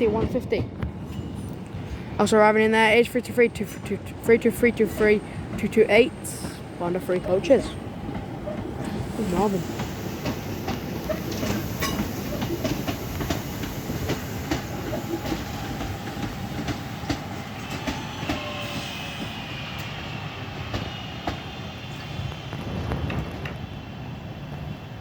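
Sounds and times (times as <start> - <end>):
low train rumble: 0.0 - 25.0
train wheels clicking over rail joints: 3.6 - 20.0.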